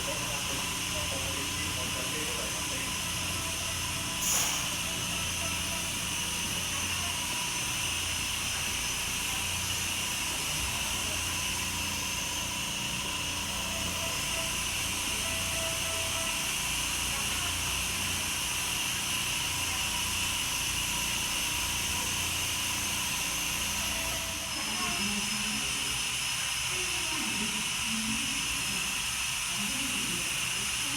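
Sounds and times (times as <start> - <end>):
compressed air hissing: 0.0 - 14.8.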